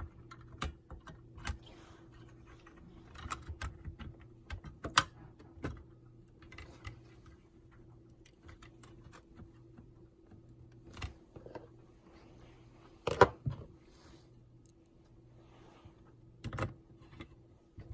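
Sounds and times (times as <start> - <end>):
small parts clicking and tapping: 0.0 - 1.6, 2.2 - 11.6
faint steady hum: 0.0 - 17.9.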